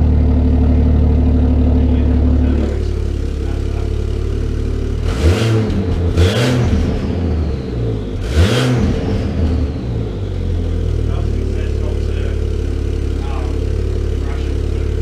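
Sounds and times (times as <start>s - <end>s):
car engine idling and revving: 0.0s - 15.0s.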